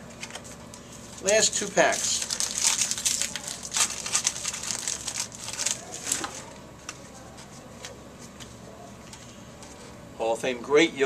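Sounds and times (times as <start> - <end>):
wrapper tearing and crinkling: 1.2 - 6.5.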